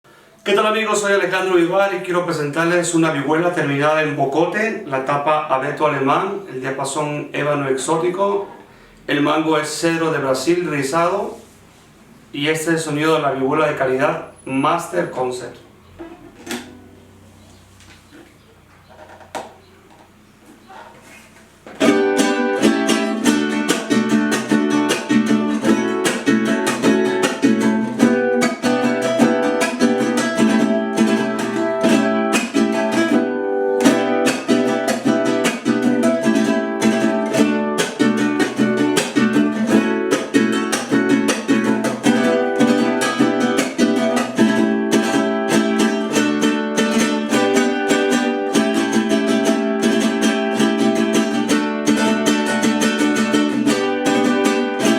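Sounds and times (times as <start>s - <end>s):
guitar strummed in rapid chords: 21.8s - 54.9s.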